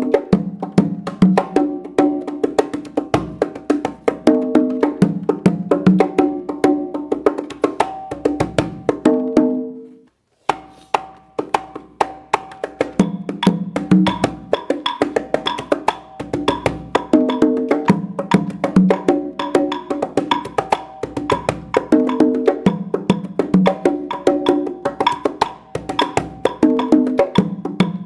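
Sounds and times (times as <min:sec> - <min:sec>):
toy drum percussion rhythm: 0:00.0 - 0:09.7, 0:10.5 - 0:28.0.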